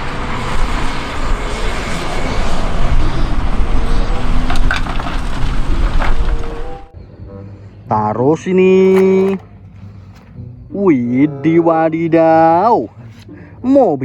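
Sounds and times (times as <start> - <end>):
excavator engine rumbling: 0.0 - 7.0.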